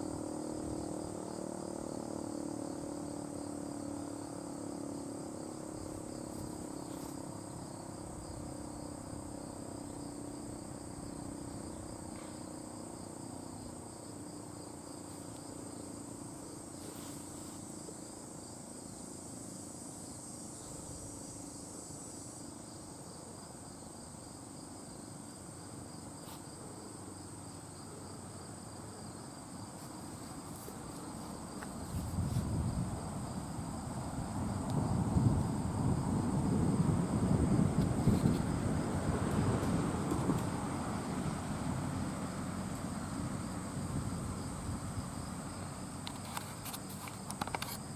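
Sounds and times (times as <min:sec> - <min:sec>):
insects trilling: 0:00.0 - 0:47.9
wind buffeting microphone: 0:31.8 - 0:42.1.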